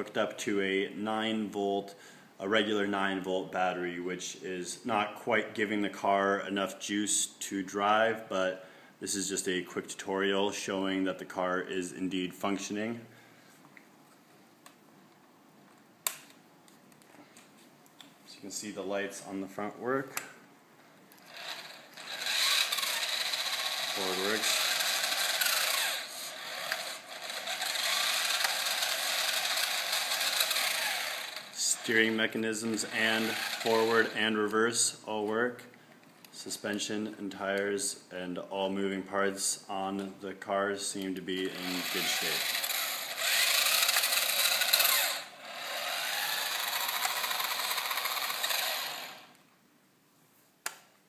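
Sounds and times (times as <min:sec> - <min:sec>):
toy car motor and gears whirring: 0:21.2 - 0:34.3, 0:41.4 - 0:49.4.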